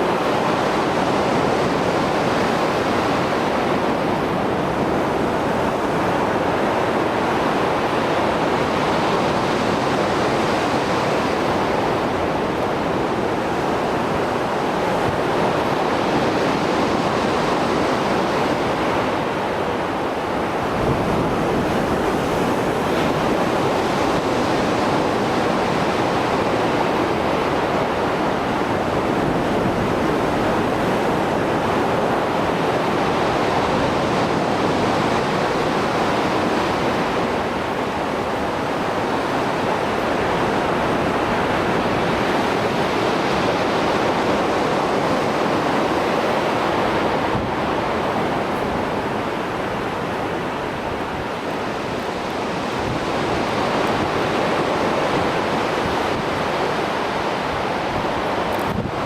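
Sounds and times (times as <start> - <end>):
waves breaking on shore: 0.0 - 59.0.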